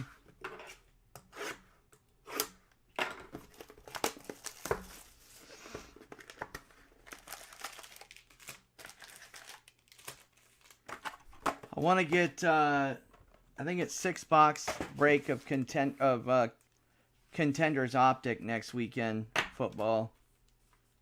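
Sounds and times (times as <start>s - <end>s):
plastic wrap tearing and crinkling: 7.0s - 10.9s.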